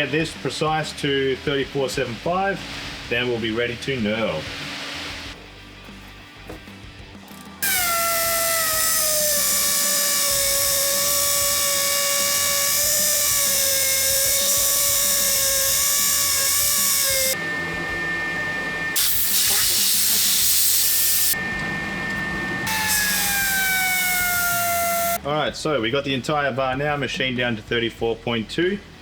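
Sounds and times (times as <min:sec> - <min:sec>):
belt sander grinding steel: 0:07.6 - 0:25.2.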